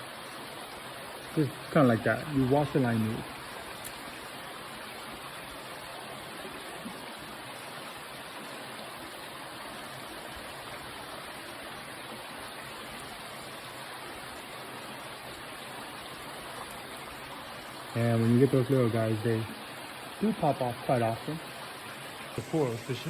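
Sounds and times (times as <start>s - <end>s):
creek water rushing: 0.0s - 23.0s.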